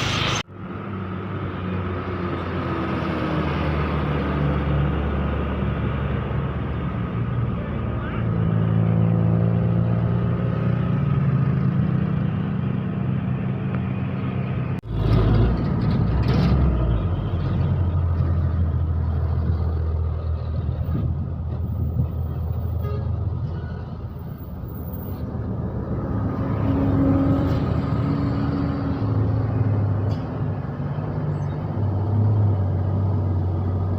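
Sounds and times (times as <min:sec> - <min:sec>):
rush of noise: 0:00.0 - 0:01.9.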